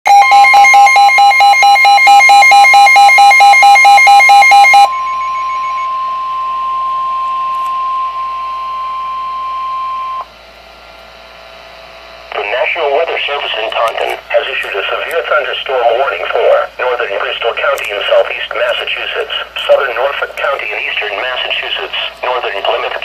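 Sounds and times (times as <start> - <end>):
electronic beeping alarm: 0.1 - 10.4
steady alarm tone: 0.1 - 23.0
faint radio hiss: 12.3 - 23.0.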